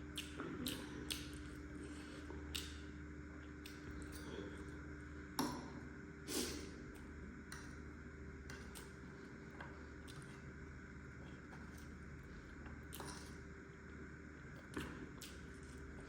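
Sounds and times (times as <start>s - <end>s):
faint steady hum: 0.0s - 16.0s
quiet chewing: 0.2s - 4.8s, 8.5s - 10.5s, 11.1s - 16.0s.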